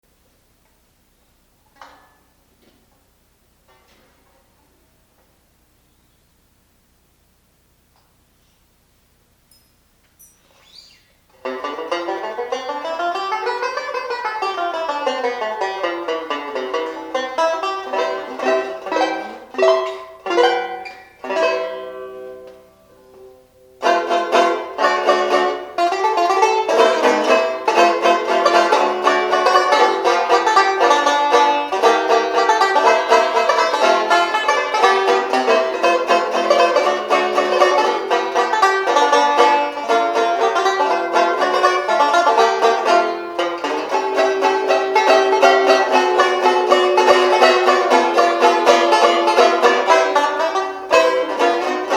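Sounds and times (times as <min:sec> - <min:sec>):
banjo playing jazz: 0:11.3 - 0:51.9.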